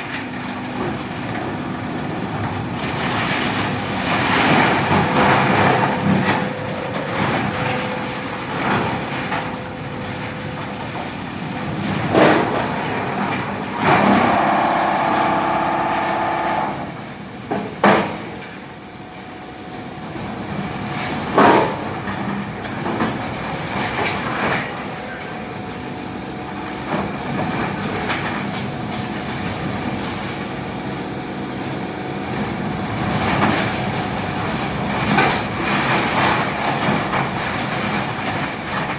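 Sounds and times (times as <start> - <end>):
tub grinder grinding wood: 13.4 - 38.9.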